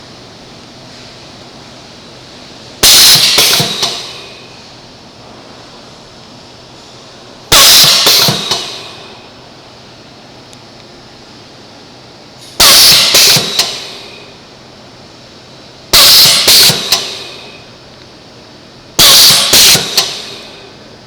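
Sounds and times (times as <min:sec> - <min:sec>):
filling machine humming: 0:01.7 - 0:21.0
loud metallic clang: 0:02.8 - 0:04.5, 0:07.5 - 0:09.2, 0:12.6 - 0:14.2, 0:16.0 - 0:17.6, 0:19.0 - 0:20.6.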